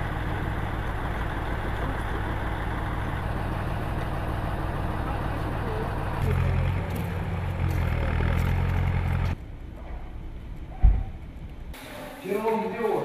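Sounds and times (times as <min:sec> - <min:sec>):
engine idling: 0:00.0 - 0:09.5.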